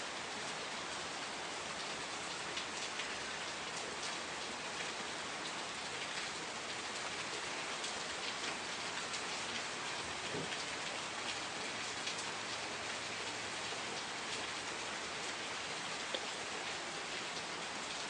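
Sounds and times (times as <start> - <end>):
steady rainfall: 0.0 - 18.0.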